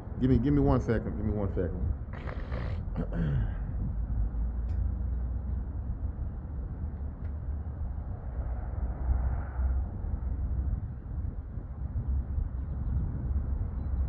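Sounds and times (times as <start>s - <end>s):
wind rumbling on microphone: 0.0s - 14.0s
breathy exhale: 2.2s - 3.6s.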